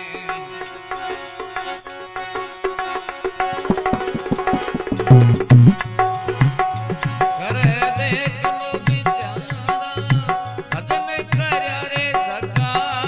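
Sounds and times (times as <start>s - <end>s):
held melodic notes: 1.8s - 7.5s
hand drum percussion: 2.6s - 13.0s.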